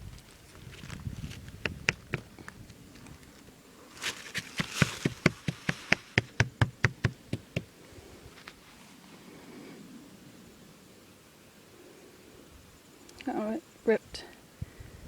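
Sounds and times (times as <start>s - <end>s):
sharp taps: 4.6s - 7.7s.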